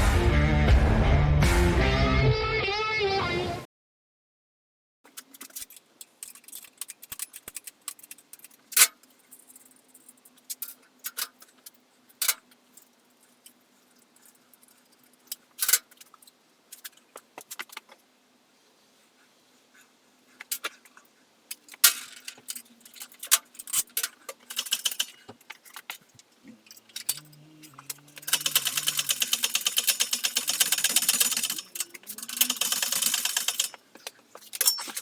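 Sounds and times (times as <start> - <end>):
metal tools clinking: 5.1 - 17.9, 20.4 - 35.0.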